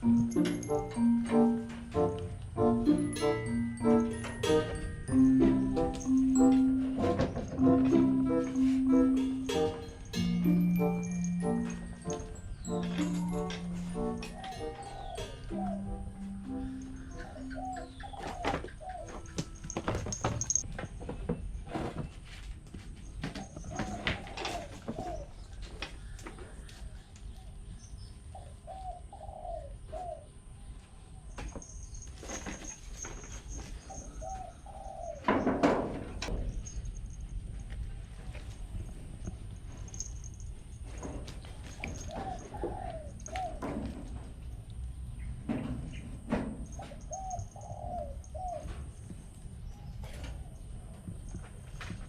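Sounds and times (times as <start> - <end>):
knocks and rustles: 3.4 - 14.4, 18.1 - 26.6, 31.3 - 34.2, 35.1 - 47.5
dove cooing: 12.9 - 19.6, 23.6 - 25.4, 28.4 - 30.3, 33.8 - 35.7, 41.6 - 44.2, 46.7 - 49.0.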